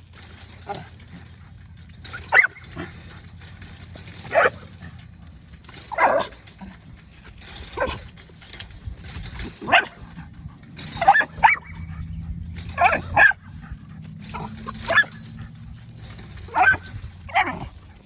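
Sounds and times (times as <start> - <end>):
dog barking: 12.8 - 13.4.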